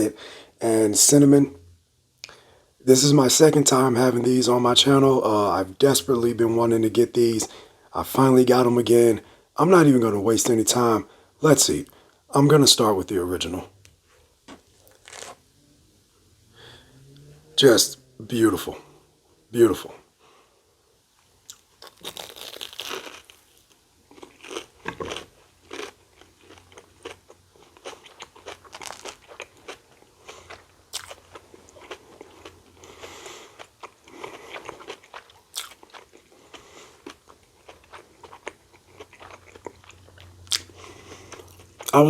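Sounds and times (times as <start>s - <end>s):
crisp crunches of batter: 14.4s - 15.4s, 21.4s - 42.0s
wet chewing: 21.4s - 42.0s.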